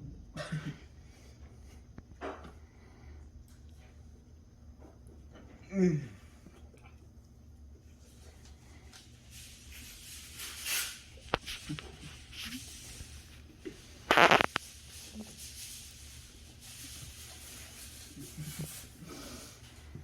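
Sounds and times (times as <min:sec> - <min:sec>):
person chewing: 0:14.1 - 0:14.6
soft mouth noises: 0:14.1 - 0:14.6.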